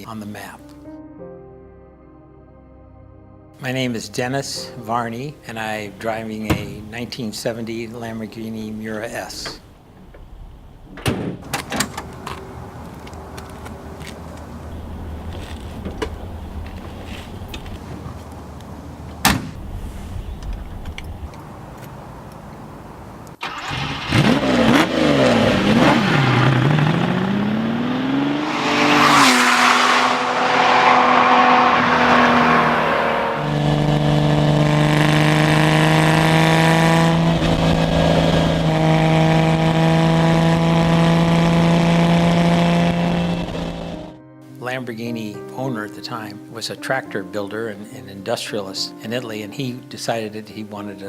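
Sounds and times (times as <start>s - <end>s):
car engine revving and accelerating: 23.6s - 44.1s.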